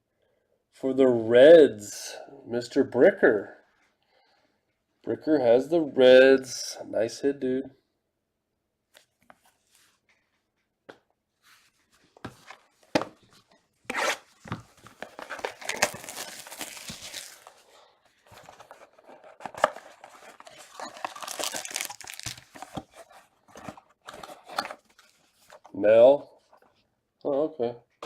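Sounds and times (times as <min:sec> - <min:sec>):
card wrapping tearing and crinkling: 0:13.9 - 0:17.7, 0:18.3 - 0:24.9.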